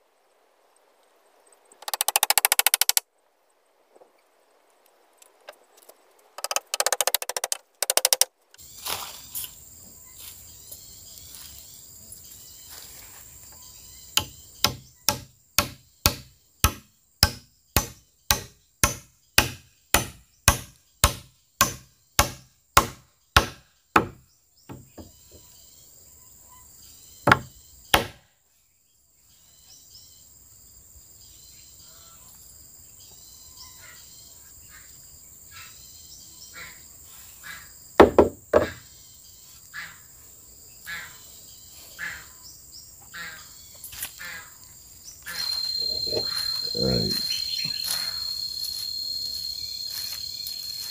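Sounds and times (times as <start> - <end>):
sharp knocking blows: 14.2 - 25.1, 27.3 - 28.2.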